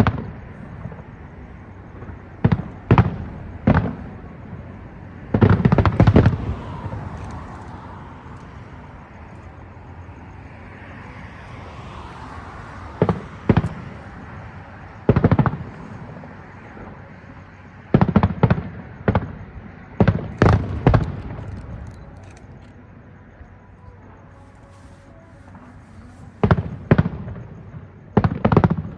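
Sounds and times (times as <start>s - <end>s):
fireworks shells bursting: 6.9s - 9.7s, 20.3s - 22.7s.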